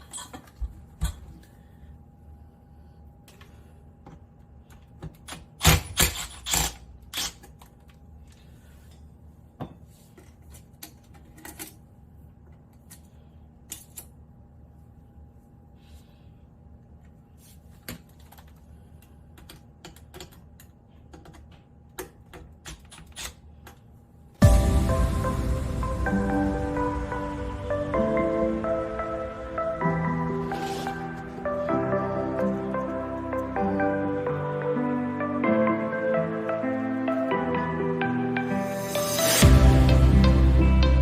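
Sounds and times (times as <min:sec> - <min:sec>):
faint steady hum: 0:00.0 - 0:05.4.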